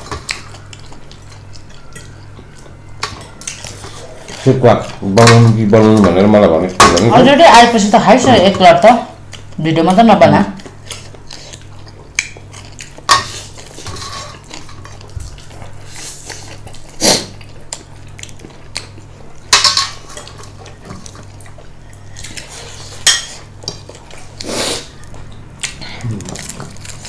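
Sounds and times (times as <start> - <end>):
utensils clinking on dishes: 0.0 - 7.3, 13.0 - 15.1, 19.5 - 21.3, 21.9 - 23.5
faint low hum: 0.0 - 27.0.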